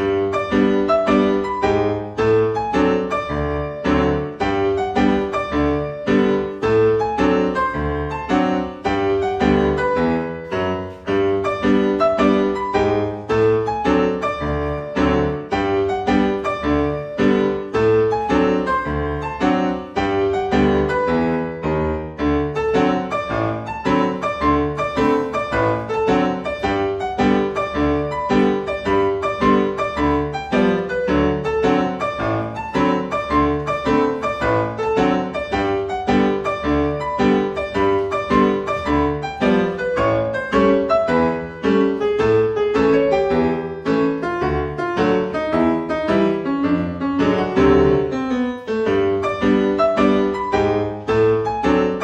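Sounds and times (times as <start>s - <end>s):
piano-led cha-cha-cha music: 0.0s - 52.0s.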